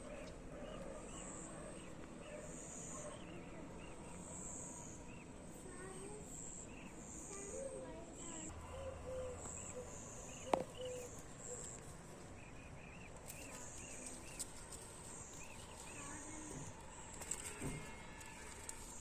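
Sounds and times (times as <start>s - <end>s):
insects trilling: 2.5s - 11.8s.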